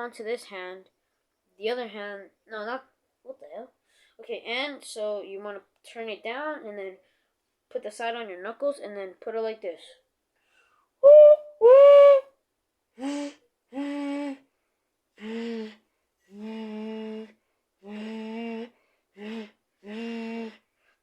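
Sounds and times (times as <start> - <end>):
person imitating train whistle: 11.0 - 12.3.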